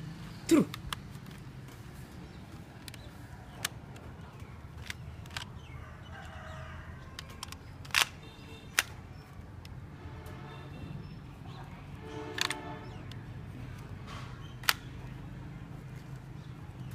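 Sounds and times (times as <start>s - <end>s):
plastic clicks and snaps: 2.8s - 5.6s, 7.2s - 9.0s, 12.3s - 13.9s, 14.5s - 14.9s.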